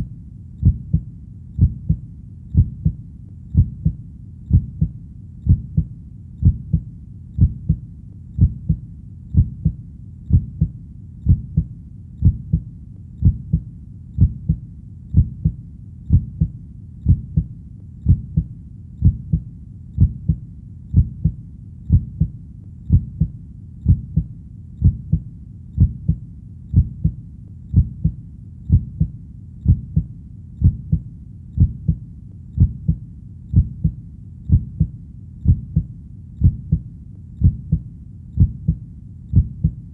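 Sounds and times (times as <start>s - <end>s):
heartbeat double thump: 0.6s - 4.9s, 5.5s - 6.8s, 7.4s - 7.8s, 8.4s - 8.8s, 9.4s - 10.7s, 11.3s - 12.6s, 13.2s - 13.6s, 14.2s - 14.6s, 15.2s - 19.4s, 20.0s - 22.3s, 22.9s - 25.2s, 25.8s - 31.0s, 31.6s - 32.0s, 32.6s - 36.8s, 37.4s - 37.8s, 38.4s - 39.8s.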